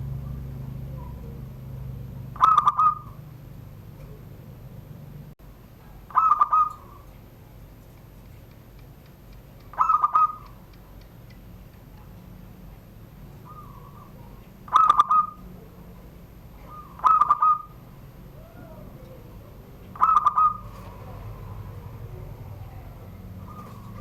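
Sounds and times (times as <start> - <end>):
dove cooing: 0.0 - 4.9, 5.8 - 7.2, 9.6 - 10.9, 13.2 - 24.0.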